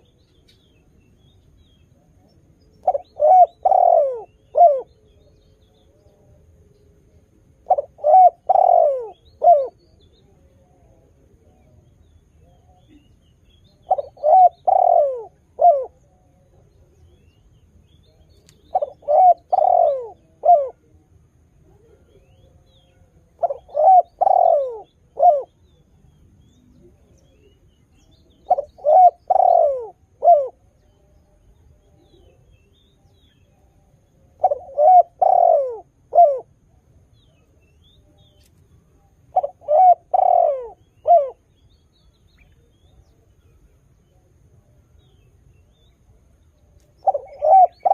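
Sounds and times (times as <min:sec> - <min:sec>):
dove cooing: 0:02.8 - 0:04.9, 0:07.6 - 0:09.8, 0:13.8 - 0:16.7, 0:18.7 - 0:21.0, 0:23.3 - 0:25.6, 0:28.3 - 0:30.7, 0:34.2 - 0:36.7, 0:39.3 - 0:41.5, 0:47.0 - 0:47.9.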